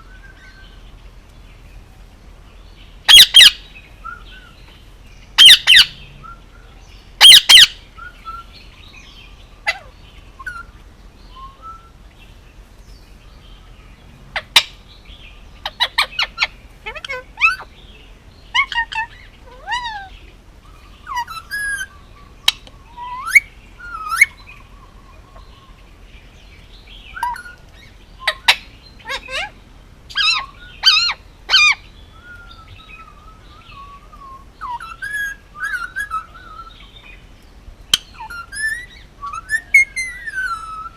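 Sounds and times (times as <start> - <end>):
whistled bird notes: 0.0 - 0.8, 3.1 - 12.3, 18.5 - 25.9, 27.0 - 29.5, 30.1 - 37.2, 37.9 - 40.9
parakeet squawks and chirps: 3.1 - 3.7, 5.4 - 6.4, 7.2 - 8.5, 9.6 - 10.7, 15.6 - 17.7, 18.5 - 20.2, 20.9 - 24.4, 27.1 - 33.8, 34.6 - 37.1, 37.9 - 40.9.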